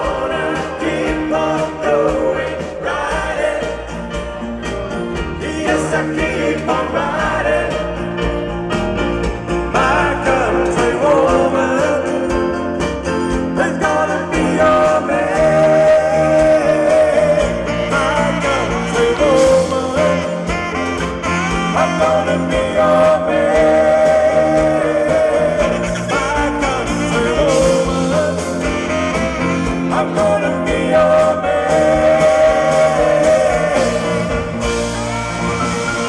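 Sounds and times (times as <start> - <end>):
live band playing pop: 0.0 - 36.0
person singing: 9.7 - 36.0.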